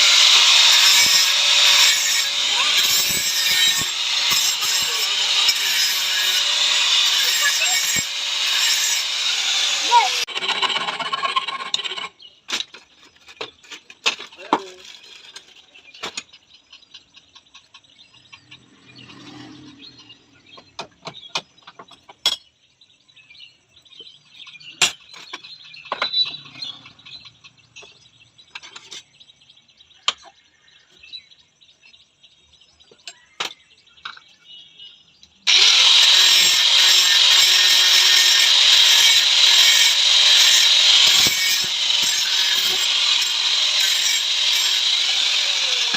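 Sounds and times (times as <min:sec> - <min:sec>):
hand tools clicking and knocking: 0:00.0 - 0:17.7, 0:35.5 - 0:45.9.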